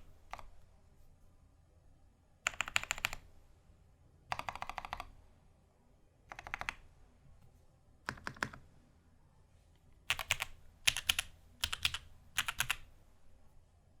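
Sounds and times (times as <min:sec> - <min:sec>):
mechanical keyboard typing: 0:02.5 - 0:03.2, 0:04.3 - 0:05.1, 0:06.3 - 0:06.8, 0:08.1 - 0:08.6, 0:10.1 - 0:12.9.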